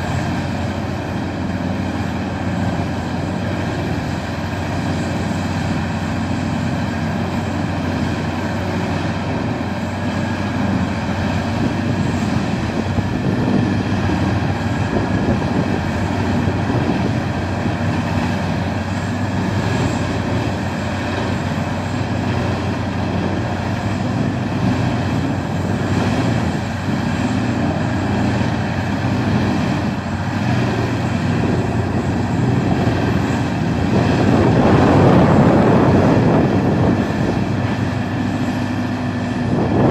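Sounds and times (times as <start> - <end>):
wood chipper droning: 0.0 - 39.9.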